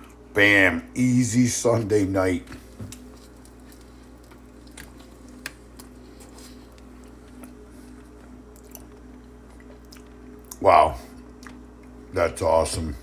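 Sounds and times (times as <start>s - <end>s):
steady low hum: 0.0s - 13.0s
soft eating squishes: 2.3s - 12.2s
small eating clicks: 2.4s - 10.6s.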